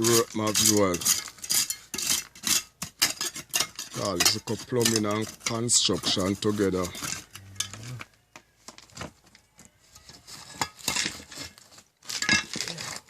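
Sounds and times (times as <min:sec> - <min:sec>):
metal tools clinking on masonry: 0:00.0 - 0:08.1, 0:09.2 - 0:13.0
tools scraping: 0:00.0 - 0:13.0.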